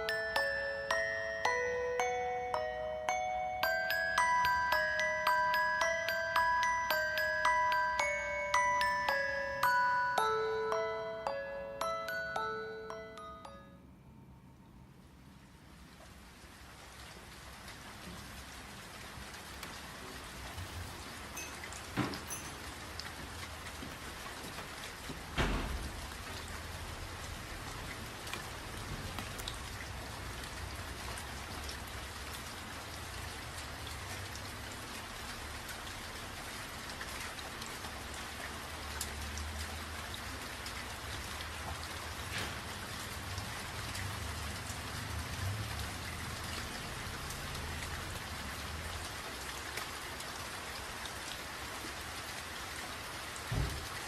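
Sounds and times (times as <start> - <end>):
raindrops ticking: 0.0 - 13.4, 21.3 - 44.8
steady rain hissing: 15.1 - 54.0.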